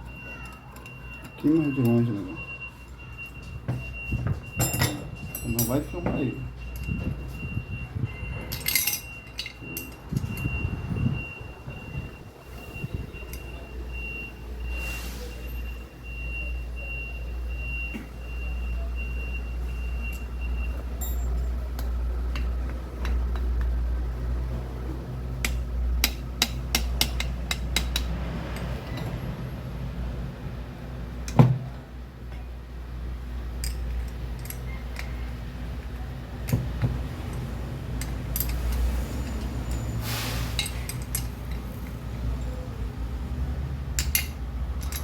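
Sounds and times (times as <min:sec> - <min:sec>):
metal tools clinking: 0:04.5 - 0:07.0, 0:08.5 - 0:10.6, 0:20.0 - 0:23.8, 0:33.6 - 0:42.0, 0:44.0 - 0:45.0.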